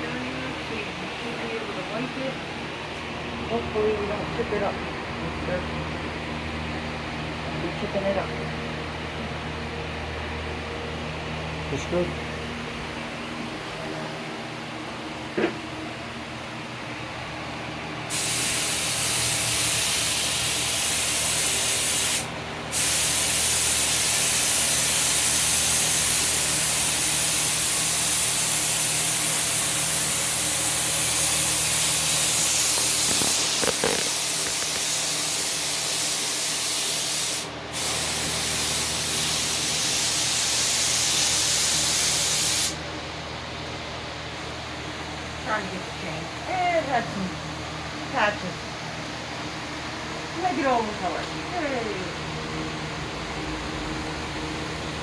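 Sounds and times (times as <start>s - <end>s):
low machine hum: 0.0s - 18.3s, 19.0s - 28.5s, 42.8s - 55.0s
paint sprayer hissing: 18.1s - 42.8s.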